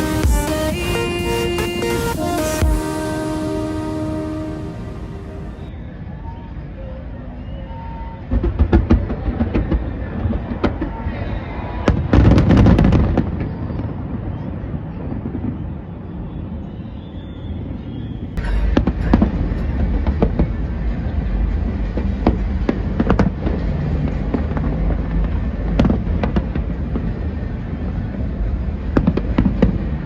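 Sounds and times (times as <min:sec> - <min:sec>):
music playing: 0:00.0 - 0:05.7, 0:18.4 - 0:25.9
fireworks bangs and crackles: 0:08.2 - 0:16.6, 0:18.6 - 0:30.0
deep rumble: 0:18.4 - 0:30.0.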